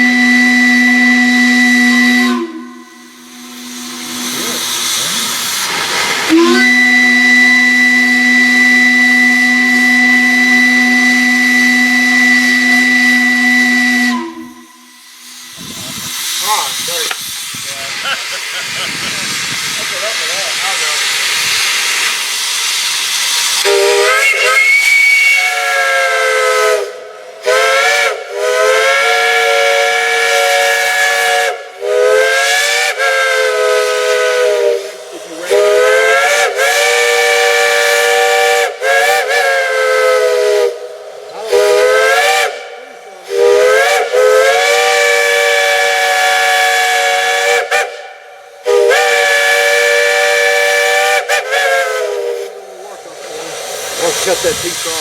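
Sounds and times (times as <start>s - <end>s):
steam whistle chord blasts: 0.0s - 5.2s, 6.2s - 15.7s, 23.4s - 52.6s
steam hissing: 0.0s - 55.0s.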